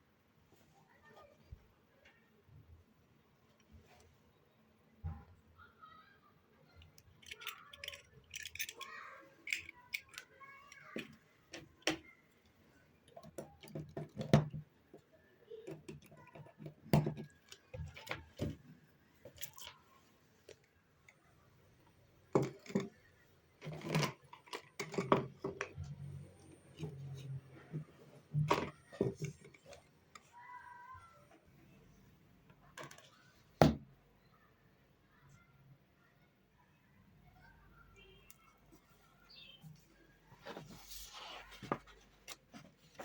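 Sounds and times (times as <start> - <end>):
objects clicking and tapping: 6.8 - 12.1, 13.0 - 18.6, 19.2 - 19.8, 22.3 - 23.0, 23.6 - 30.4.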